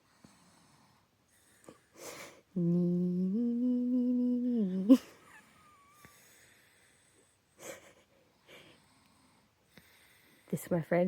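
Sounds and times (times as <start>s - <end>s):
person humming: 2.1s - 6.0s.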